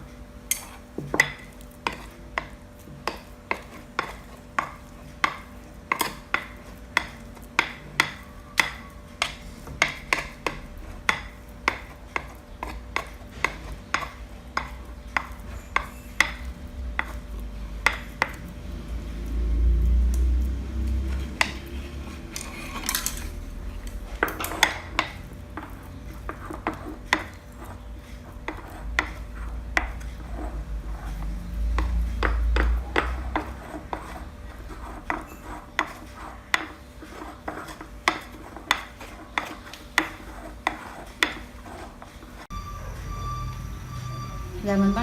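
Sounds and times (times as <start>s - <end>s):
utensil beating paste in bowl: 0.0s - 42.6s.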